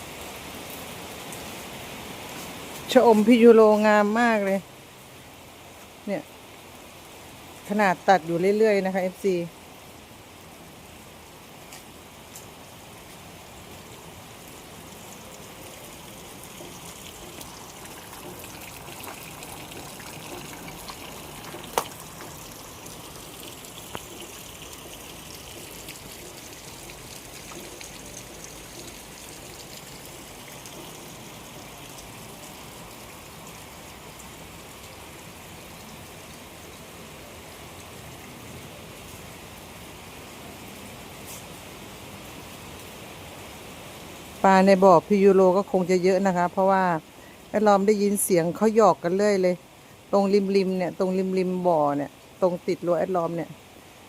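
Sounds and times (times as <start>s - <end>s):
light rain falling: 0.0s - 54.0s
water trickling: 11.7s - 38.5s.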